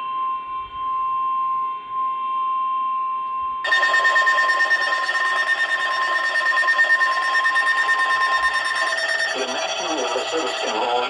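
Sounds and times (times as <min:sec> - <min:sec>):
warning alarm tone: 0:03.6 - 0:11.0.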